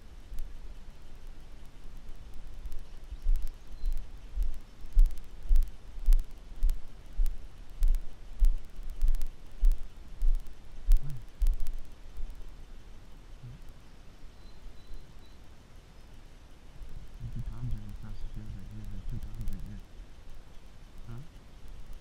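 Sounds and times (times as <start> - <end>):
faint clicks: 0.0 - 15.5, 16.1 - 22.0
rhythmic low thumps: 2.0 - 12.4, 16.9 - 19.8.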